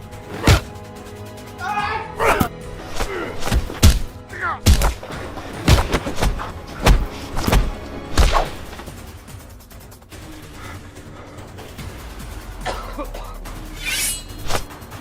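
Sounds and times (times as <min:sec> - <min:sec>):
heavy thudding impacts: 0:03.5 - 0:08.3.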